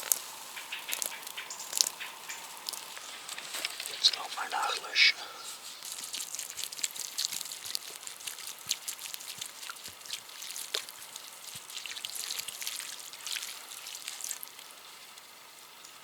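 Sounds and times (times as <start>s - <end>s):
embers popping: 0.0s - 4.3s
water hissing on embers: 0.0s - 16.0s.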